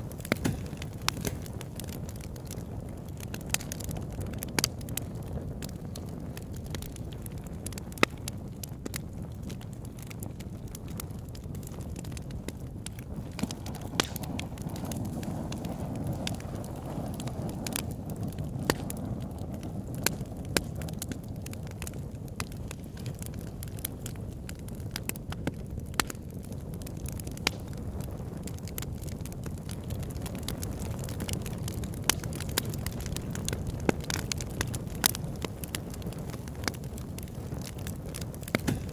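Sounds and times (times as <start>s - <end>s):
fire crackling and popping: 0.0s - 38.9s
low rumble of flames: 0.0s - 38.9s.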